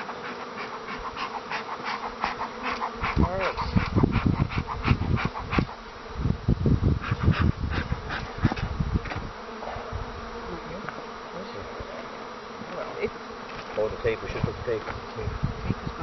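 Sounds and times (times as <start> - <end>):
honeybees buzzing: 0.0 - 16.0
knocks and thumps on hive: 0.0 - 16.0.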